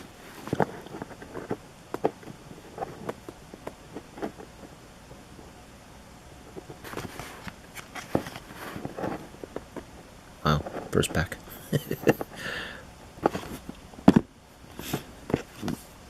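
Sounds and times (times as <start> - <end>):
cards rustling: 6.6 - 9.7.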